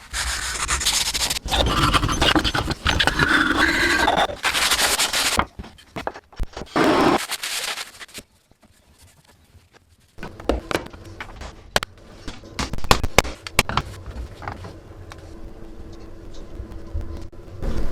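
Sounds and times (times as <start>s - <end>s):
rasping on a tool: 0.1s - 5.4s, 6.7s - 7.2s.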